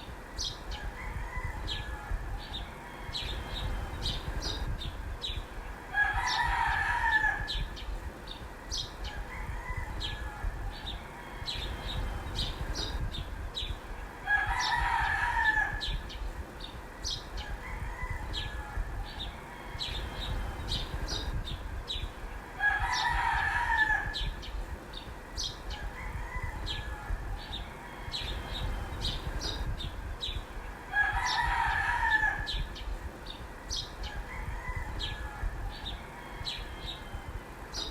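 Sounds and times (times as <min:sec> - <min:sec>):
small birds chirping: 0:00.0 - 0:37.9
rooster crowing: 0:00.7 - 0:03.8, 0:05.9 - 0:07.8, 0:09.0 - 0:12.1, 0:14.1 - 0:16.1, 0:17.0 - 0:20.4, 0:22.5 - 0:24.4, 0:25.7 - 0:28.8, 0:30.9 - 0:32.8, 0:34.0 - 0:37.4.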